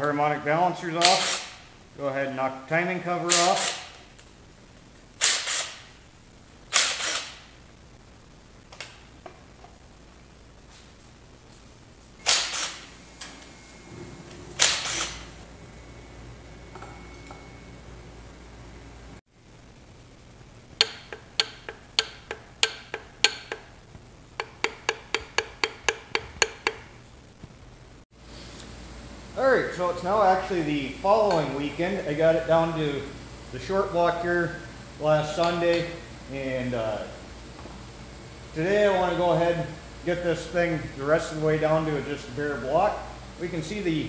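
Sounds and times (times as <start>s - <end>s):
hammer tapping on metal: 20.8s - 23.8s, 24.4s - 26.9s
sharp metallic knocks: 20.8s - 23.8s, 24.4s - 26.9s.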